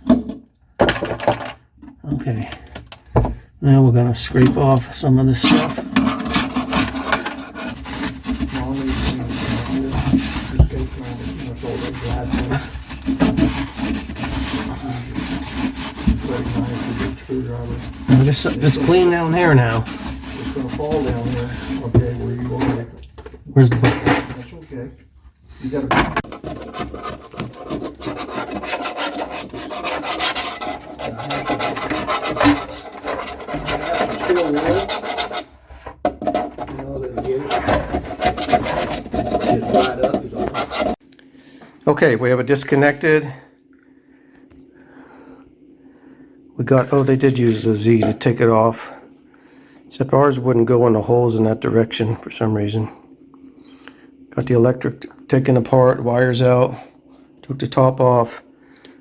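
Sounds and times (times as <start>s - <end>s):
tool scraping putty: 4.3s - 22.9s, 26.2s - 41.0s.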